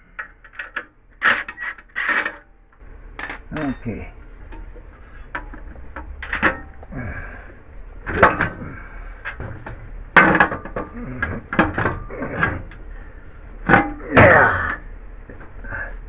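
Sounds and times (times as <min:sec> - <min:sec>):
metal parts knocking and scraping: 0:00.0 - 0:06.9, 0:08.0 - 0:12.9, 0:13.6 - 0:14.5.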